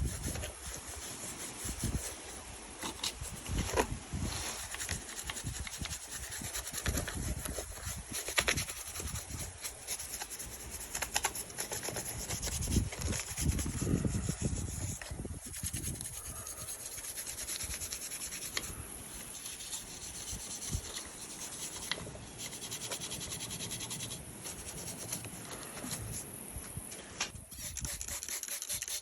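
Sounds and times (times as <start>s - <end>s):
rubbing on plastic: 0.0s - 26.3s.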